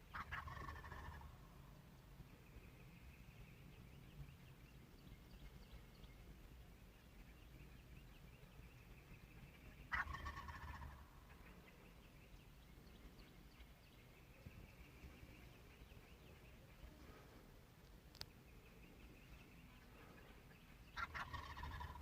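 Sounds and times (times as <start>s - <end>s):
wild turkey gobbling: 0.1s - 1.6s, 8.7s - 12.4s, 19.2s - 22.0s.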